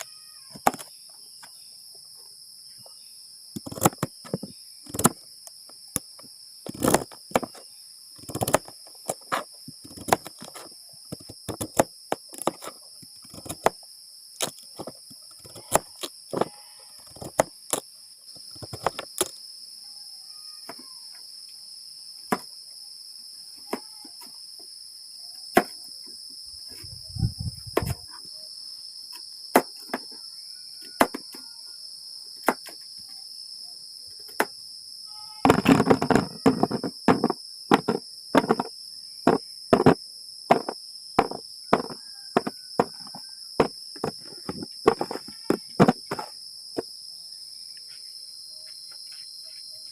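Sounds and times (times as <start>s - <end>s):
insects chirring: 0.0s - 49.9s
sharp knocks and taps: 35.5s - 38.7s, 39.3s - 46.3s.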